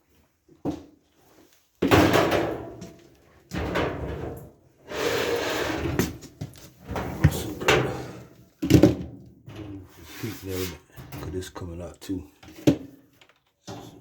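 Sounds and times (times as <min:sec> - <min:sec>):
metal scraping and sliding: 0:03.6 - 0:08.4, 0:09.5 - 0:11.6.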